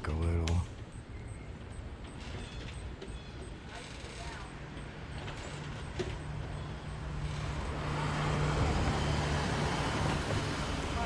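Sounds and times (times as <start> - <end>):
engine running with low hum: 4.2 - 11.0.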